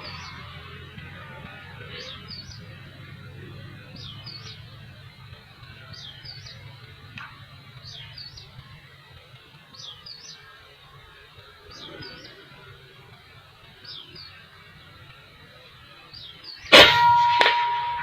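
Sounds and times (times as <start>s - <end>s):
outdoor background noise: 0.0s - 18.0s.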